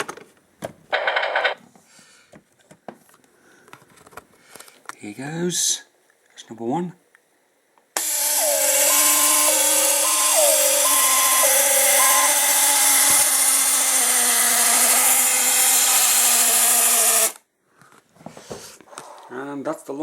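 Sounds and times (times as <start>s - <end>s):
two-tone alarm: 8.0s - 13.4s.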